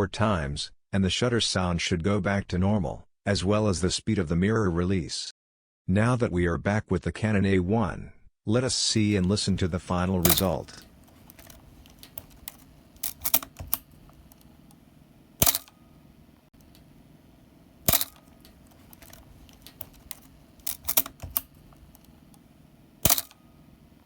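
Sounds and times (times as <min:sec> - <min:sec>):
light mechanical clicks: 0:09.0 - 0:14.8, 0:15.4 - 0:15.8, 0:16.6 - 0:17.0, 0:17.8 - 0:24.0
camera shutter click: 0:10.1 - 0:14.8, 0:15.4 - 0:15.8, 0:17.8 - 0:22.4, 0:23.0 - 0:23.6.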